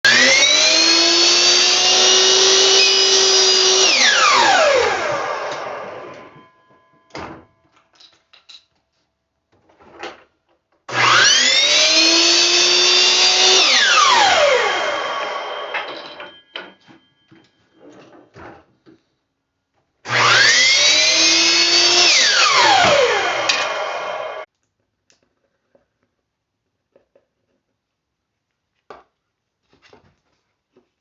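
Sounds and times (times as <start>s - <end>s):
electric power saw whining: 0.0s - 6.5s, 10.9s - 16.4s, 20.1s - 24.5s.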